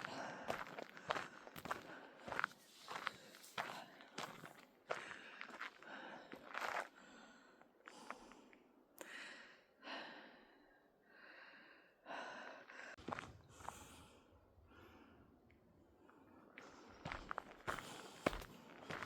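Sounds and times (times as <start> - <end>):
footsteps on dirt trail: 0.0 - 6.9, 13.0 - 14.1, 16.5 - 19.0
soft breathing: 0.0 - 19.0.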